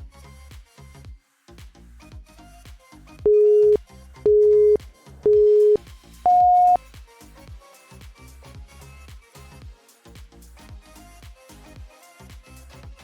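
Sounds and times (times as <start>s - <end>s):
upbeat background music: 0.0s - 13.0s
electronic timer beeps: 3.3s - 6.8s.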